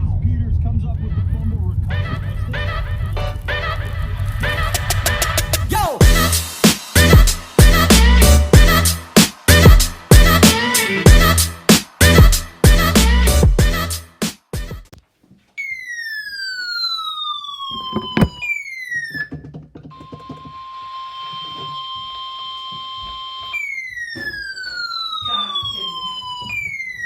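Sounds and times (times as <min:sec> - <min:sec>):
falling siren-like alert tones: 0:15.6 - 0:27.0
knocks: 0:17.9 - 0:18.4, 0:19.1 - 0:20.6
steady warning tone: 0:19.9 - 0:27.0.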